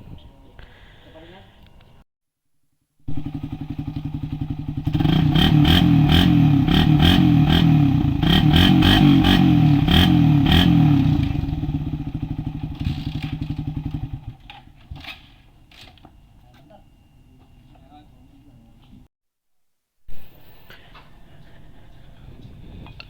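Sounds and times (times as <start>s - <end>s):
motorcycle engine revving: 3.1s - 15.1s.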